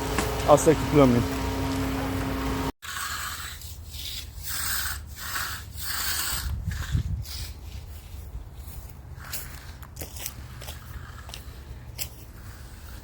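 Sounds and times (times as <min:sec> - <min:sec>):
hand tool scraping concrete: 0:02.8 - 0:13.0.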